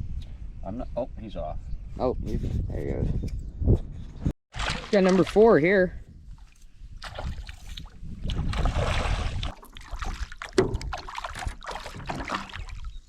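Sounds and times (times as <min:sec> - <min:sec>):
fish splashing: 0:04.5 - 0:05.5, 0:08.5 - 0:13.0
knocking in a small boat: 0:10.6 - 0:11.2.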